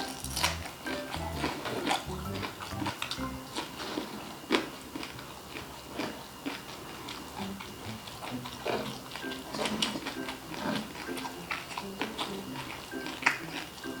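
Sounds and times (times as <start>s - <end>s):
light background music: 0.0s - 4.1s, 7.3s - 14.0s
chewing crispy food: 0.0s - 14.0s.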